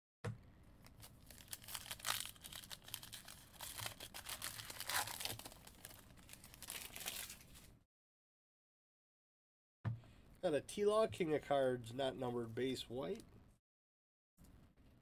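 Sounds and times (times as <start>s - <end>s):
foil wrapper tearing and crinkling: 1.0s - 7.6s.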